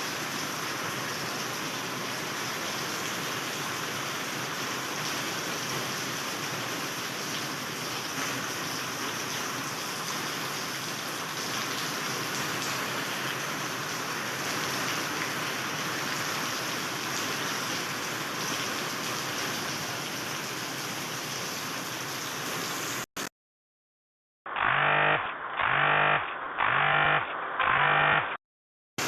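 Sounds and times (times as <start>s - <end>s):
heavy rain pouring: 0.0s - 23.1s.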